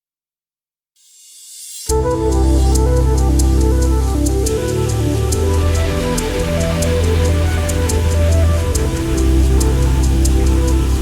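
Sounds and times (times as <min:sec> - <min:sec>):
synth and guitar background music: 0:01.9 - 0:11.0.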